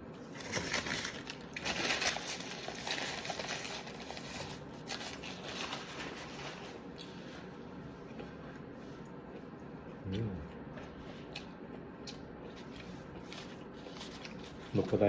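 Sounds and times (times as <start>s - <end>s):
wet crackly chewing: 8.0s - 15.0s.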